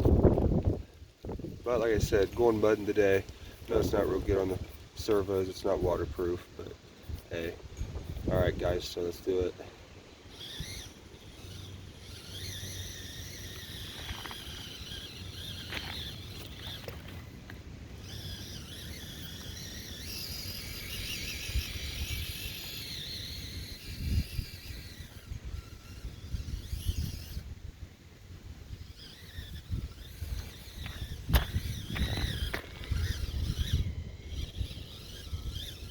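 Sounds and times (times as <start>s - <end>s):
small electric motor and gears whining: 0.0s - 35.9s
thumps: 30.2s - 33.6s.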